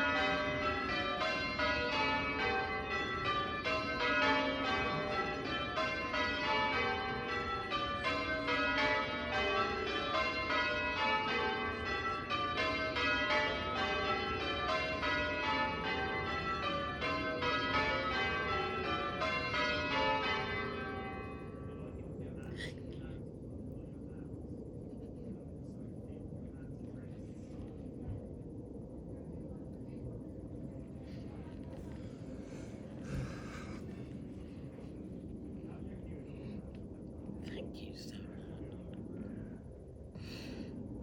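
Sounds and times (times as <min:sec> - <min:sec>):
church bells ringing: 0:00.0 - 0:22.1.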